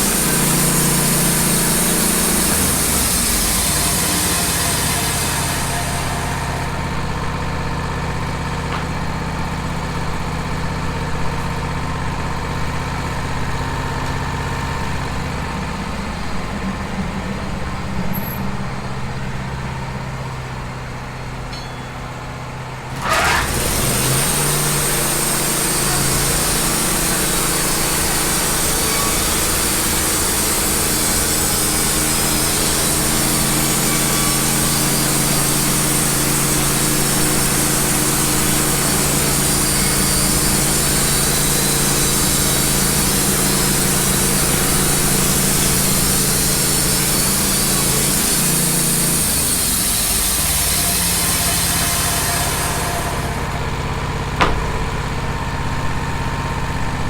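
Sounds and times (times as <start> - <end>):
band saw cutting log: 0.0 - 10.0, 22.9 - 57.0
sawmill engine running: 0.0 - 57.0.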